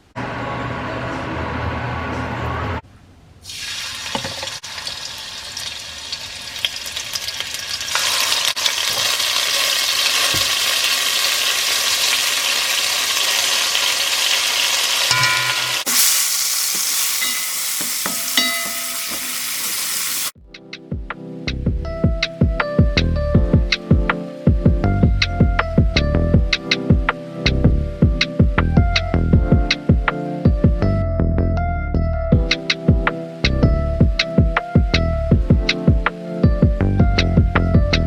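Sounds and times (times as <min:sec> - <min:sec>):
food sizzling in a pan: 0:03.5 - 0:20.4.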